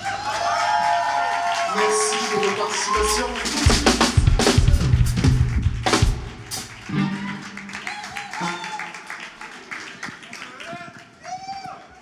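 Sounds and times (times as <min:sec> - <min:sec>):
bass drum and snare hits: 0:03.0 - 0:06.9
band holding notes: 0:03.0 - 0:09.2.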